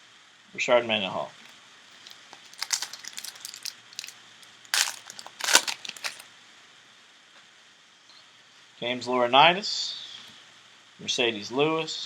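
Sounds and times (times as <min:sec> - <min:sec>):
cards being handled: 0:02.0 - 0:04.1, 0:04.8 - 0:06.2
card pack wrapper crinkling: 0:02.0 - 0:06.2.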